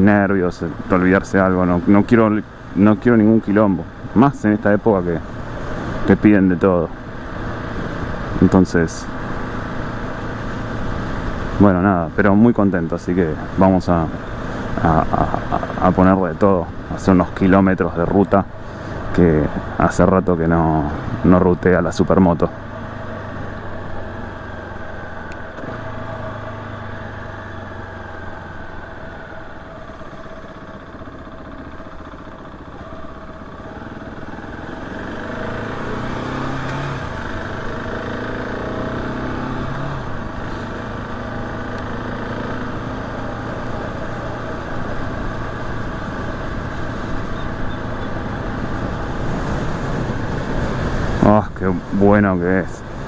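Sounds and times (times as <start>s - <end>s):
motorcycle engine revving: 13.2s - 53.0s.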